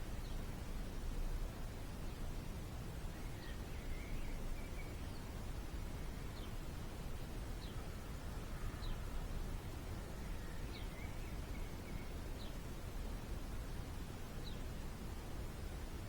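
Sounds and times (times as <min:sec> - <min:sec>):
low outdoor background noise: 0:00.0 - 0:16.0
faint bird chirps: 0:03.1 - 0:05.4, 0:10.2 - 0:12.6.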